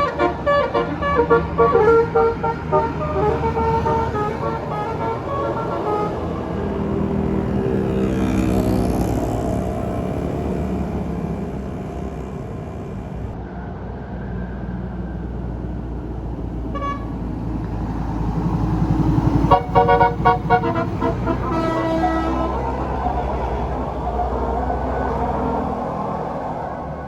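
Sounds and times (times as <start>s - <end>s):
multi-tone bus horn toots: 0.0s - 8.8s, 16.6s - 17.3s, 19.2s - 24.0s
bus engine rumble: 0.0s - 27.0s.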